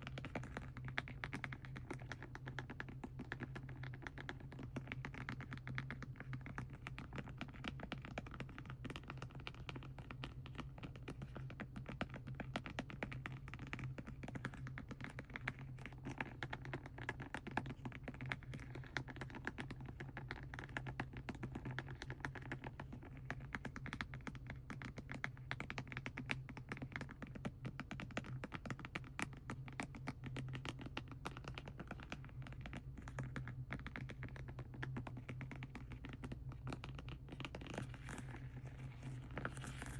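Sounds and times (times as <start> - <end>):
fast tapping on plastic packaging: 0.0 - 39.9
low steady hum: 30.2 - 39.9.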